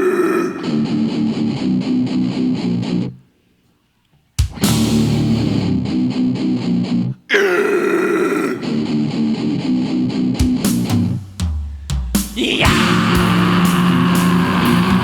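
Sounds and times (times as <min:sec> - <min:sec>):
death metal band playing: 0:04.4 - 0:07.0, 0:10.0 - 0:15.0
high held guitar note: 0:12.3 - 0:15.0.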